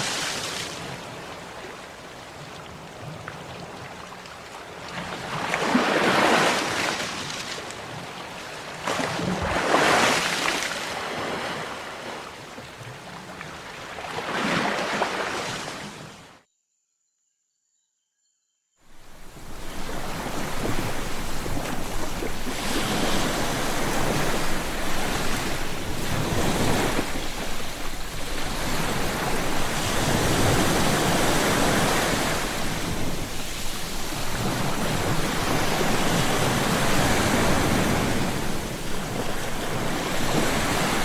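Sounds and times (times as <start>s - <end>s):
sea waves surging and washing back: 0.0s - 16.4s, 18.9s - 41.0s.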